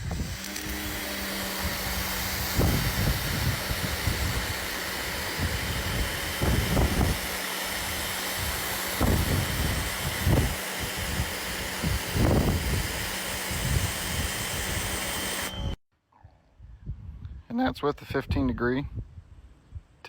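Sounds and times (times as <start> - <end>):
low gusts: 0.0 - 15.8
motor low hum: 0.0 - 15.8
pressure washer water jet hissing: 0.0 - 15.8.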